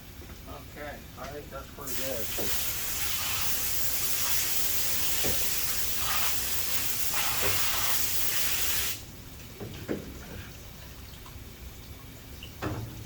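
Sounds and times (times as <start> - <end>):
spray nozzle hissing: 1.9 - 9.0.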